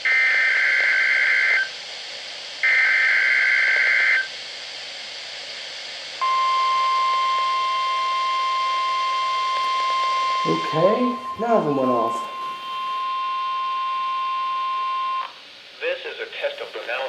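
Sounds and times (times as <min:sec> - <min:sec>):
radio background hiss: 0:01.4 - 0:06.2, 0:09.4 - 0:13.0, 0:15.2 - 0:17.0
steady warning alarm tone: 0:06.2 - 0:15.3
warbling two-tone data header: 0:10.2 - 0:13.0.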